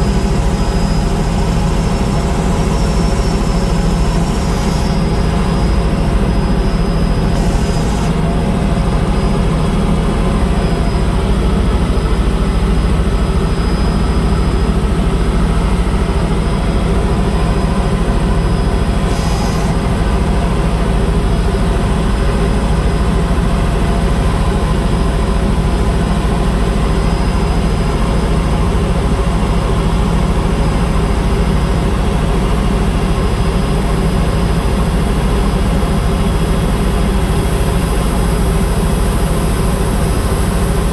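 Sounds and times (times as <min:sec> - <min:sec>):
thin high whine: 0:00.0 - 0:11.5, 0:16.2 - 0:26.2
helicopter rotor drone: 0:00.0 - 0:40.9.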